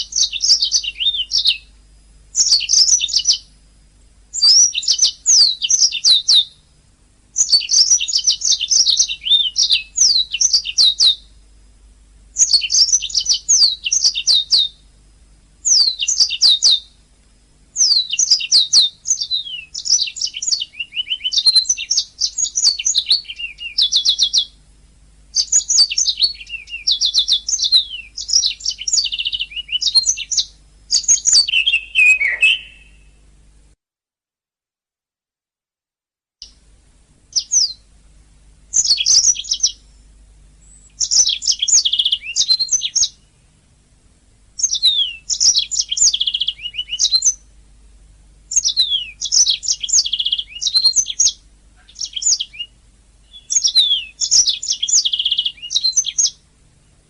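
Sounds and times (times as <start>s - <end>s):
canary singing trills: 0.0s - 3.6s, 4.3s - 6.7s, 7.4s - 11.4s, 12.3s - 14.9s, 15.6s - 17.0s, 17.7s - 24.6s, 25.3s - 33.2s, 37.3s - 37.9s, 38.7s - 43.4s, 44.6s - 47.5s, 48.5s - 56.5s.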